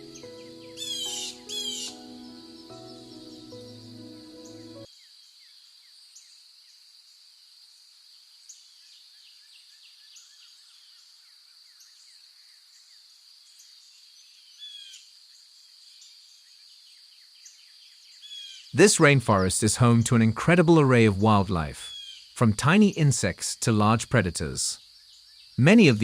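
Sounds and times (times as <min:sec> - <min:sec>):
falling chirps: 0:00.0 - 0:04.9
high insect drone: 0:00.0 - 0:05.4.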